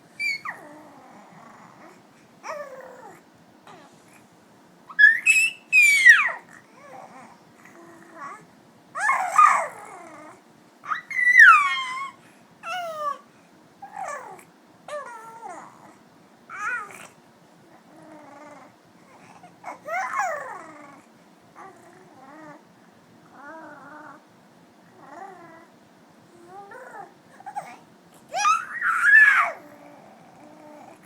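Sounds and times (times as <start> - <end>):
baby squealing: 0.2 - 0.6, 5.0 - 6.4, 10.9 - 13.0, 28.3 - 29.6
baby cooing and babbling: 13.8 - 22.3, 26.4 - 31.0.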